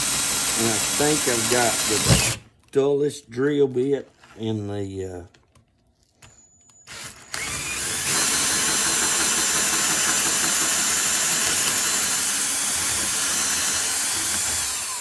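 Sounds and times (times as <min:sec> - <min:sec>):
power drill boring through plastic: 0:00.0 - 0:02.4, 0:06.9 - 0:15.0.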